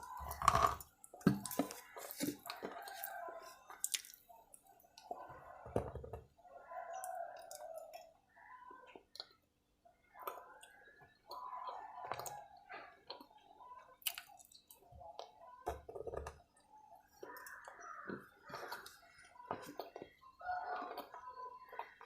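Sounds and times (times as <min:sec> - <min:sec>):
person chewing wet chalk: 0:00.0 - 0:05.3, 0:17.1 - 0:22.0.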